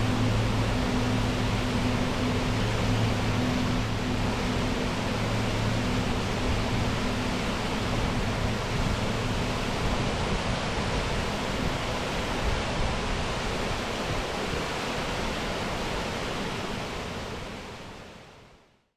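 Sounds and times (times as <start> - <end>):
low hum: 0.0 - 12.8
waterfall rushing: 0.0 - 17.7.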